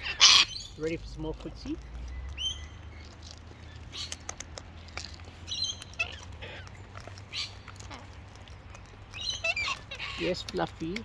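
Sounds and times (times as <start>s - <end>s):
parrots chirping: 0.0s - 10.9s
sharp clicks and taps: 4.1s - 6.0s.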